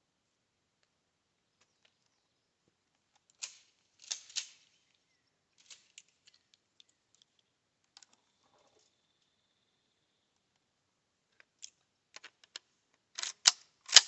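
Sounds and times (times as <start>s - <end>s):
shotgun clicks and clacks: 13.2s - 14.0s.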